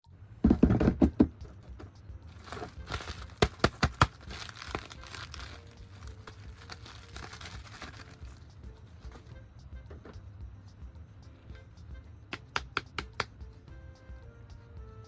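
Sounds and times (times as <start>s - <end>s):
packaging crinkling and tearing: 2.3s - 8.4s.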